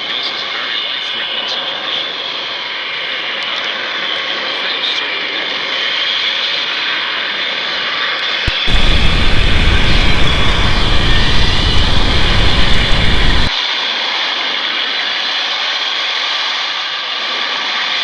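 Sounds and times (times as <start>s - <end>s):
loud rumbling roar: 8.5s - 13.5s
steady hiss: 8.5s - 13.6s.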